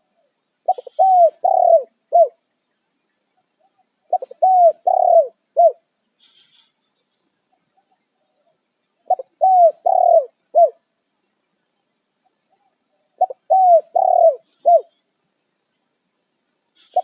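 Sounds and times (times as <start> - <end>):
dove cooing: 0.7 - 2.4, 4.1 - 5.8, 9.1 - 10.8, 13.2 - 15.0.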